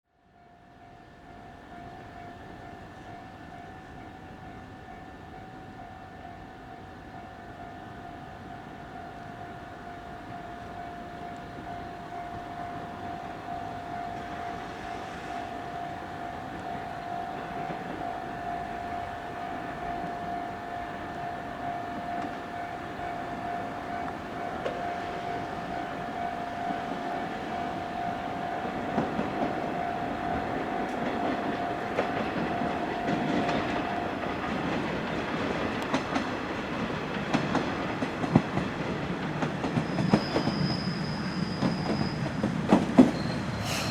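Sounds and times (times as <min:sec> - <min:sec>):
train rolling in: 0:00.4 - 0:43.9
steady siren tone: 0:07.5 - 0:35.2
wheels clicking over rail joints: 0:26.6 - 0:40.7.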